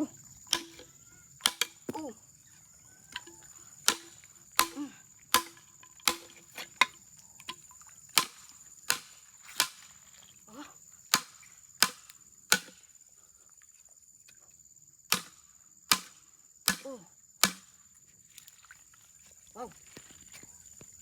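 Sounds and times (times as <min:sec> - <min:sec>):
hand tool striking rock: 0:00.5 - 0:02.1, 0:03.1 - 0:09.9, 0:11.1 - 0:12.8, 0:15.1 - 0:17.7.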